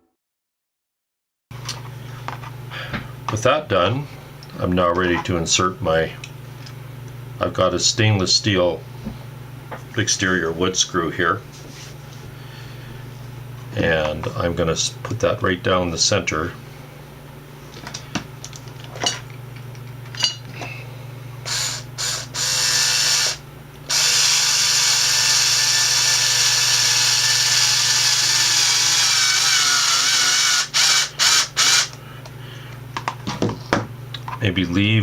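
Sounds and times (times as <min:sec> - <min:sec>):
electric drill-driver driving screw: 0:21.5 - 0:32.0.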